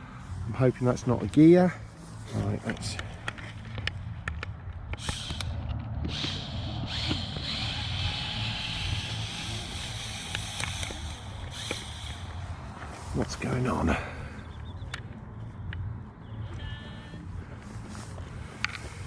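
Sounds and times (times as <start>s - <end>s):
sharp clicks: 2.7s - 12.4s
toy motor whirring: 5.0s - 12.5s.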